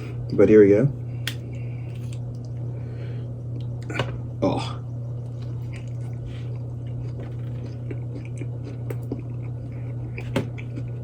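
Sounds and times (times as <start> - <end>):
low hum: 0.0 - 11.0
person chewing food: 5.2 - 11.0.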